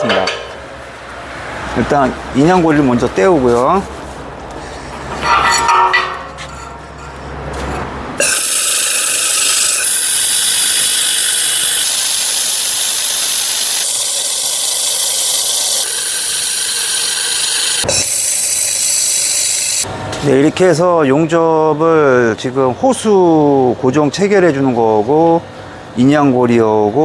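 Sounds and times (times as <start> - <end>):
arc welding crackling hiss: 8.2 - 19.9.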